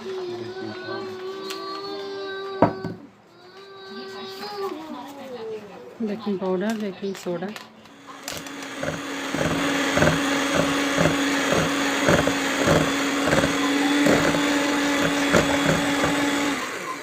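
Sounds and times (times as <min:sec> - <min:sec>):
electric hand mixer humming: 0:07.9 - 0:17.0
beaters knocking against bowl: 0:08.8 - 0:16.4.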